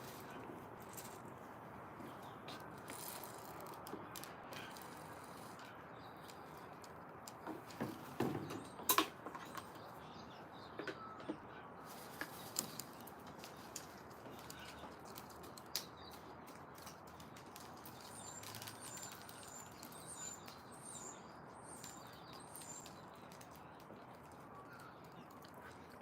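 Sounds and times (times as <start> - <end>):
faint bird chirps: 9.8 - 12.5.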